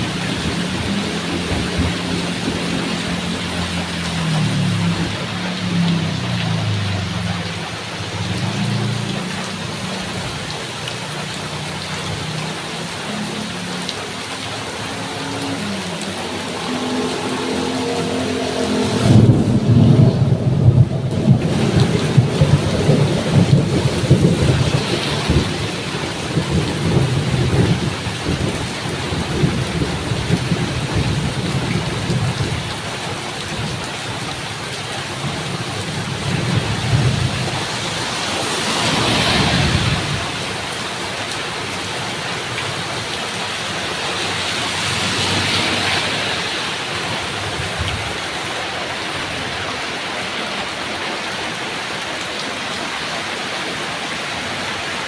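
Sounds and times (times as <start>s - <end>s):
thunder rumbling: 0.0s - 7.3s, 16.8s - 32.8s, 35.2s - 40.7s
steady rain: 0.0s - 55.0s.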